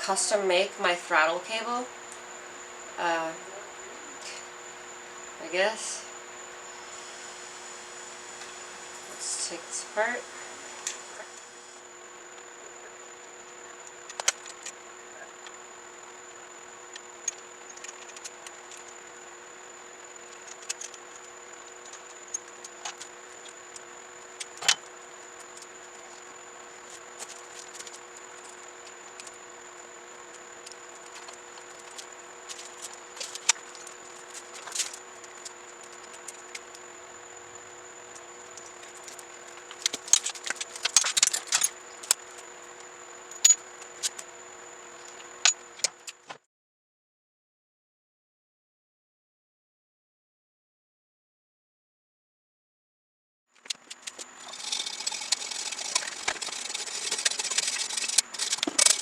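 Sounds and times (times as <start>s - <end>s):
electrical hum: 0.0s - 46.2s, 53.8s - 59.0s
metal parts and tools clinking: 39.8s - 41.8s, 54.4s - 59.0s.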